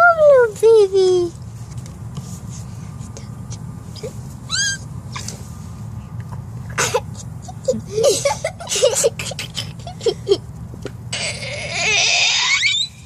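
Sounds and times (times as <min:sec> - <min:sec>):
dog whining: 0:04.0 - 0:05.3, 0:11.1 - 0:13.0.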